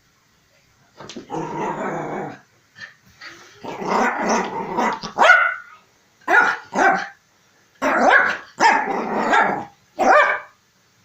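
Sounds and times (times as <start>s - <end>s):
dog barking and growling: 1.2s - 2.4s, 3.6s - 7.2s, 7.8s - 10.6s.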